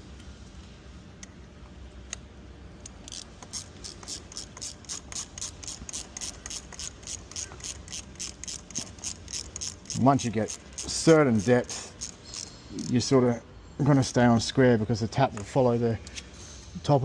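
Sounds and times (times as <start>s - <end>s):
ratchet clicking: 2.8s - 13.0s.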